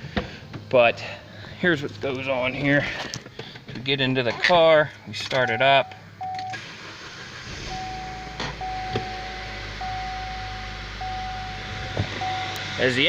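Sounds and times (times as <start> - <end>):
car engine starting and idling rough: 1.6 - 13.0
car warning chime beeps: 5.4 - 6.6, 7.6 - 12.9.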